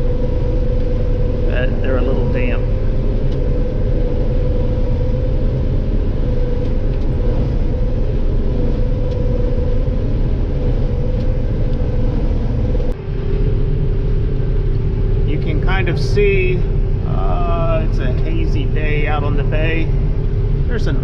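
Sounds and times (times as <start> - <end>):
combine harvester running: 0.0 - 21.0.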